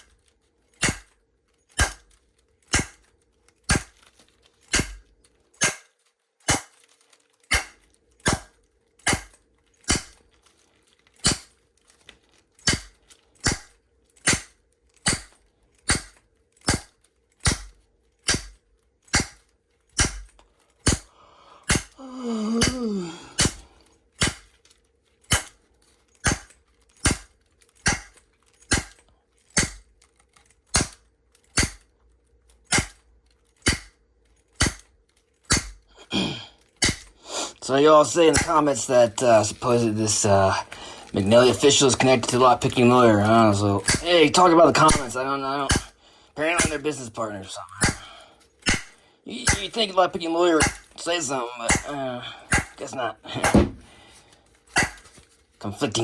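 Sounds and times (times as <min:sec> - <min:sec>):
wood block striking steel padlock: 0:00.8 - 0:01.1, 0:04.7 - 0:05.0, 0:05.6 - 0:05.9, 0:07.5 - 0:10.2, 0:11.2 - 0:11.5, 0:12.6 - 0:21.1, 0:24.2 - 0:24.5, 0:25.3 - 0:25.6, 0:26.2 - 0:29.0, 0:29.6 - 0:29.9, 0:30.8 - 0:31.9, 0:32.7 - 0:33.0, 0:33.6 - 0:34.0, 0:34.6 - 0:34.9, 0:35.5 - 0:35.9, 0:36.8 - 0:37.1, 0:52.5 - 0:52.8, 0:53.4 - 0:53.8.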